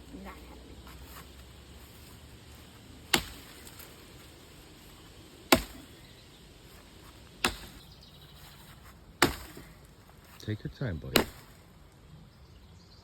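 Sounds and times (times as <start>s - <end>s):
axe chopping log: 3.0s - 4.0s, 5.4s - 5.9s, 7.4s - 7.9s, 9.2s - 9.8s, 11.1s - 11.6s.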